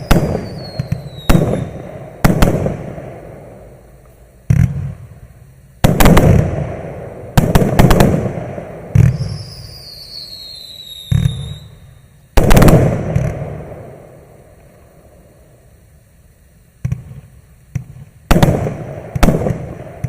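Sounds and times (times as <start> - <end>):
falling firework whistle: 0.0 - 3.0, 7.5 - 14.1.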